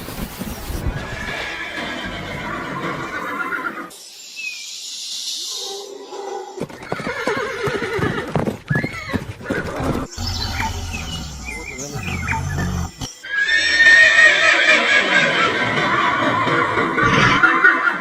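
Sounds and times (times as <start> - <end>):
horses neighing: 0.9 - 3.9, 6.6 - 18.0.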